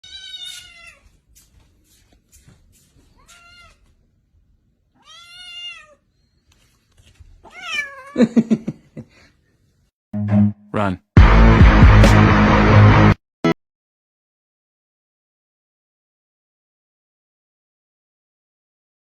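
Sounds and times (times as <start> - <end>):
cat meowing: 0.0 - 1.2, 3.2 - 3.9, 5.0 - 6.1, 7.4 - 8.2.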